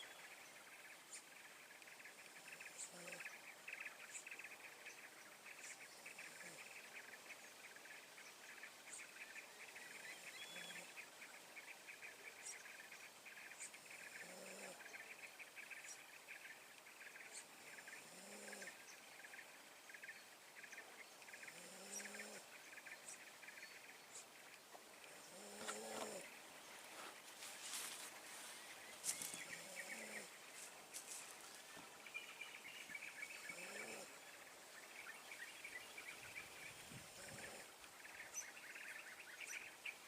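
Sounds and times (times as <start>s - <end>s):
low hooting animal call: 32.9s - 35.5s.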